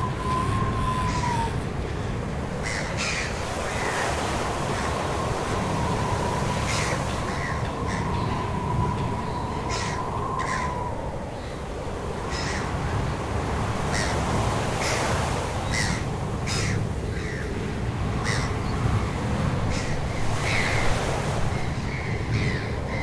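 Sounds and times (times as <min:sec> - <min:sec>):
rushing wind or surf: 0:00.0 - 0:23.0
short noisy bird calls: 0:13.9 - 0:17.6.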